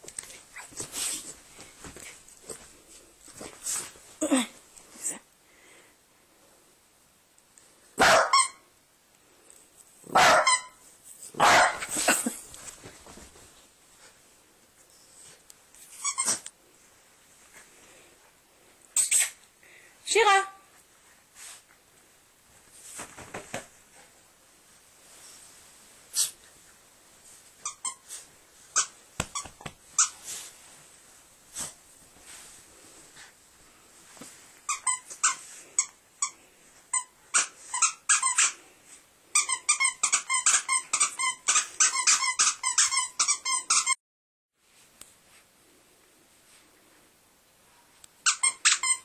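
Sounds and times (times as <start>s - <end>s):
squeaky dog toy squeaking: 8.0s - 8.6s, 10.1s - 10.8s, 16.0s - 16.4s, 27.6s - 28.1s, 28.7s - 30.2s, 34.7s - 36.3s, 36.9s - 38.6s, 39.3s - 44.0s, 48.2s - 49.0s.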